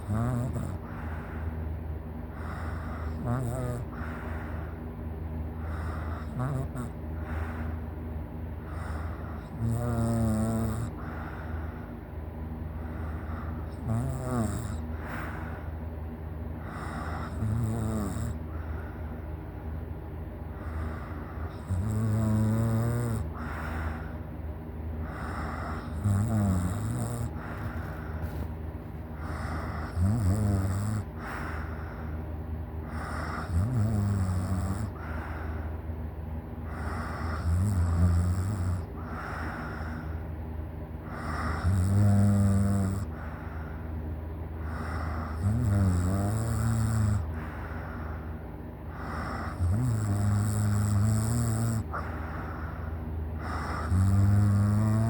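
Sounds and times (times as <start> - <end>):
person snoring heavily: 0.0 - 1.6, 2.3 - 4.8, 5.6 - 7.8, 8.6 - 11.9, 12.8 - 15.7, 16.6 - 19.0, 20.5 - 24.2, 25.0 - 32.2, 32.8 - 35.7, 36.6 - 40.2, 41.0 - 43.8, 44.6 - 55.0
breathy puffs of air: 51.9 - 53.9.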